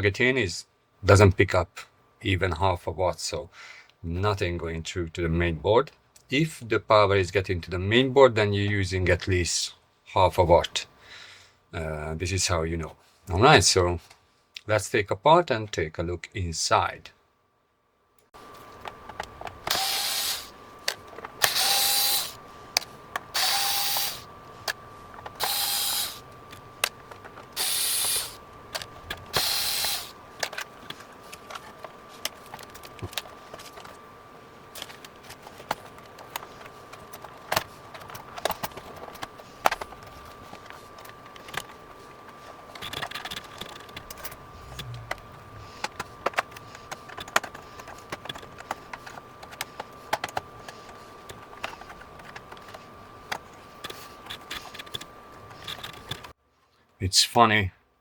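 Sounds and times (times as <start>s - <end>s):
electric screwdriver whirring: 19.6s - 20.6s, 21.4s - 22.4s, 23.3s - 24.3s, 25.4s - 26.2s, 27.6s - 28.4s, 29.3s - 30.2s.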